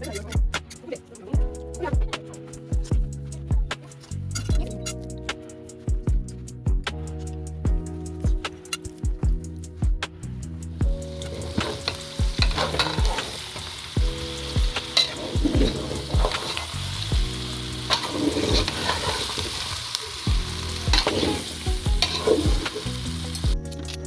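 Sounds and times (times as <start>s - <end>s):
background music with deep beat: 0.0s - 24.0s
food sizzling in a pan: 11.0s - 23.6s
spoon scraping and stirring: 11.2s - 13.7s, 14.9s - 23.2s.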